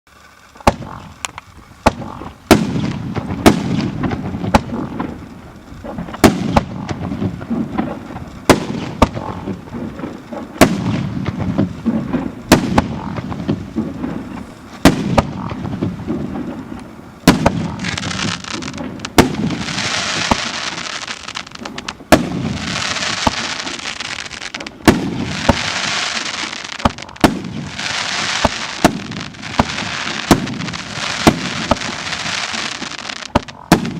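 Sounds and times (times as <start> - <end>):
fireworks bangs: 0.1 - 33.9
fireworks crackle: 0.1 - 33.9.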